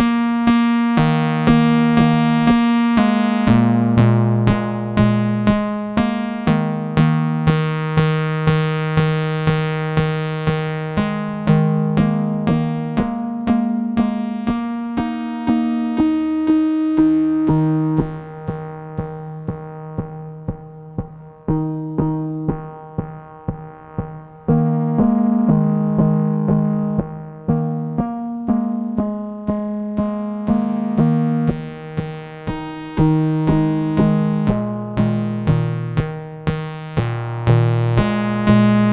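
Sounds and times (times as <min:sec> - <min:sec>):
plucked synthesizer notes: 0:00.0 - 0:38.9
synthesizer bass line: 0:17.3 - 0:38.9.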